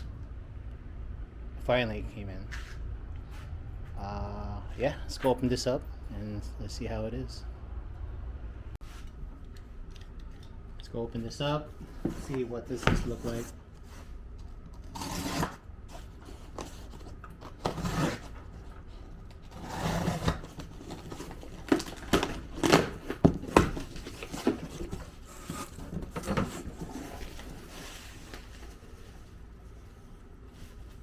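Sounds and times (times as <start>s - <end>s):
box clicks and knocks: 21.6s - 25.1s.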